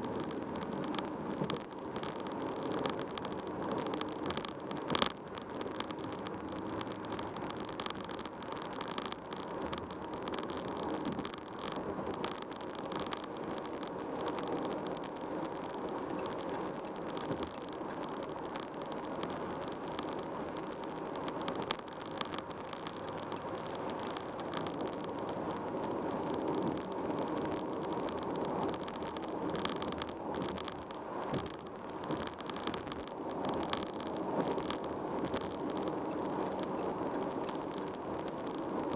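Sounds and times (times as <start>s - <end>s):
car road noise: 0.0s - 38.9s.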